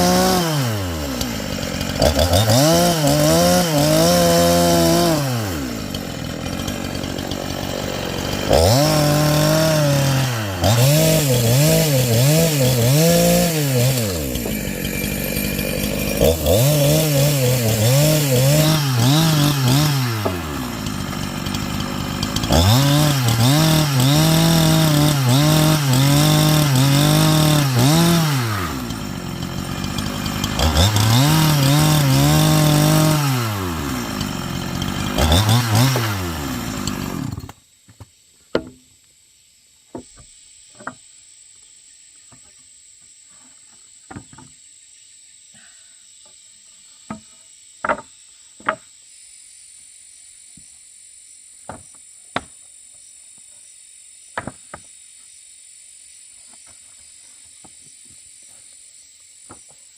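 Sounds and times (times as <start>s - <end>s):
chainsaw cutting log: 0.0s - 37.7s, 38.6s - 38.8s, 47.1s - 48.8s, 51.7s - 52.5s, 54.4s - 54.9s.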